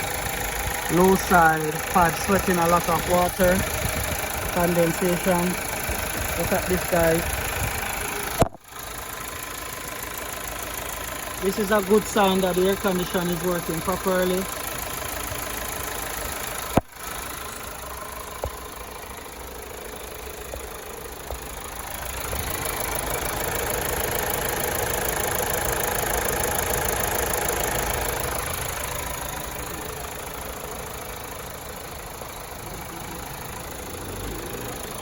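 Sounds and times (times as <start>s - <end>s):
car engine idling: 0.0s - 35.0s.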